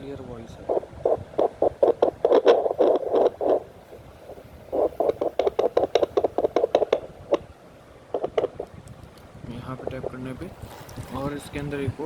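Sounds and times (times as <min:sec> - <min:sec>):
short thumps from doppler speaker: 0:00.5 - 0:07.5, 0:08.1 - 0:08.8.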